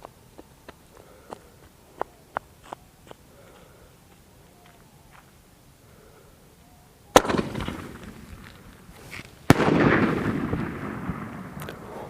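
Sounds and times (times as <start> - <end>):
firework bangs: 7.2 - 12.0.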